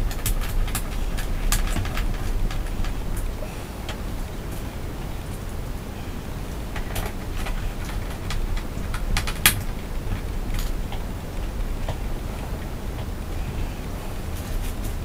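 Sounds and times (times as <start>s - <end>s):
computer parts clicking and tapping: 0.0s - 4.0s, 6.7s - 13.2s
steady low hum: 0.0s - 15.0s.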